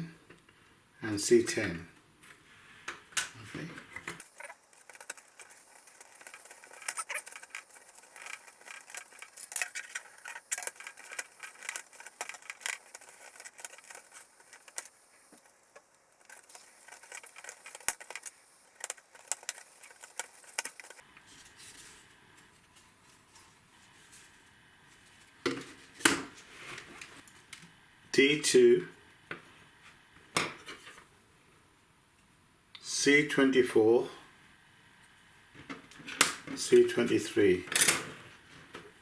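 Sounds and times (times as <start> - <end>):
wooden parts clicking and rattling: 4.0 - 21.0.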